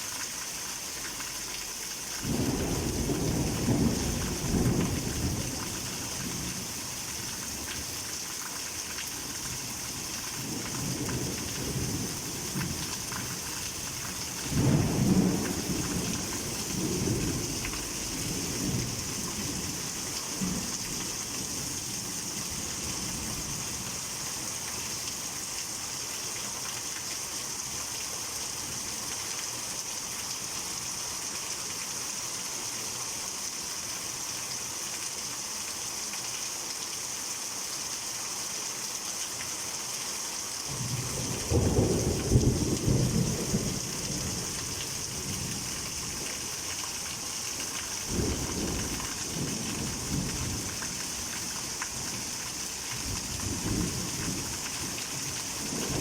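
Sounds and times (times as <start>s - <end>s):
heavy rain falling: 0.0s - 56.0s
rolling thunder: 2.2s - 5.8s, 48.1s - 50.8s, 55.6s - 56.0s.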